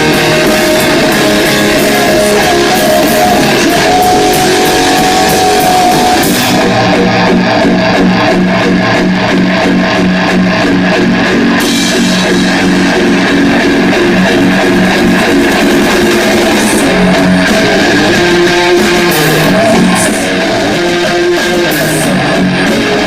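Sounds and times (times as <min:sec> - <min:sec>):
bass guitar: 0:00.0 - 0:23.0
drum kit: 0:00.0 - 0:23.0
electric guitars: 0:00.0 - 0:23.0
cymbals: 0:11.6 - 0:23.0.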